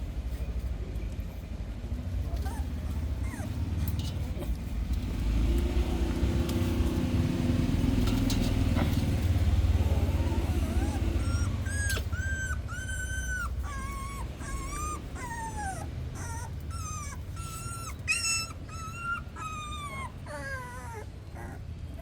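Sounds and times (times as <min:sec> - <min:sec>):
puppies whimpering: 0:02.3 - 0:04.4, 0:09.2 - 0:22.0.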